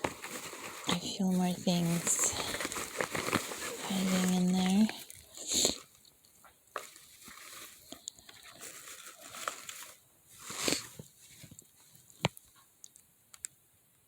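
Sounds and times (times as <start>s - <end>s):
fabric pouch rustling: 0.0s - 6.0s, 6.7s - 12.3s
plastic items clicking: 0.0s - 10.0s.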